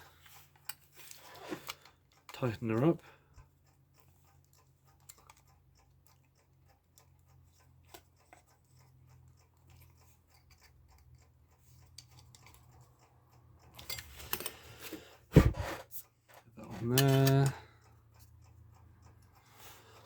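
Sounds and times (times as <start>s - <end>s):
screwdriver scraping: 0.3s - 1.9s, 9.6s - 12.9s, 13.6s - 17.6s
screwdriver clicks and scratches: 7.6s - 12.9s, 13.6s - 15.0s.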